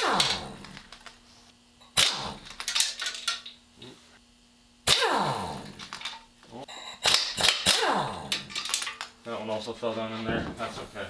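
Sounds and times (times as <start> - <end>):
impact wrench hammering: 0.0 - 0.9, 4.9 - 6.2, 7.0 - 9.1.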